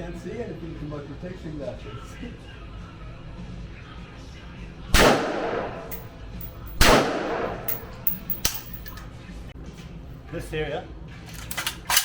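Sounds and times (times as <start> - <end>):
gunshots with echo: 6.7 - 7.9.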